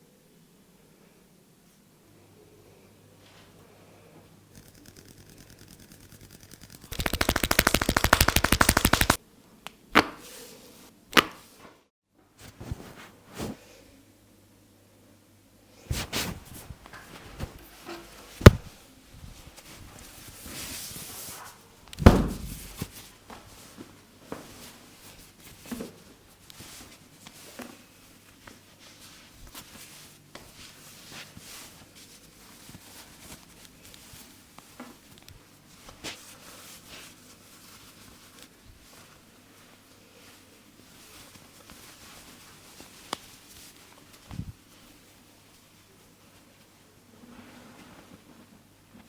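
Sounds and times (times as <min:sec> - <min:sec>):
hands slapping and rubbing head: 0:04.6 - 0:10.2, 0:18.4 - 0:18.8
heavy thump: 0:22.0 - 0:22.8.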